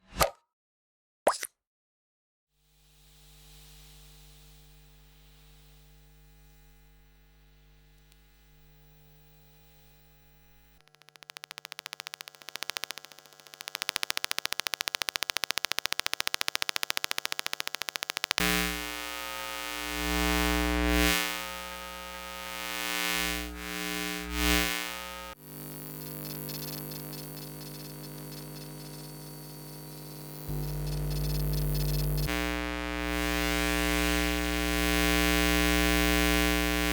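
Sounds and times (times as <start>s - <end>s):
electromagnetic hum: 2.9s - 36.9s
pulsing electrical buzz: 8.3s - 36.9s.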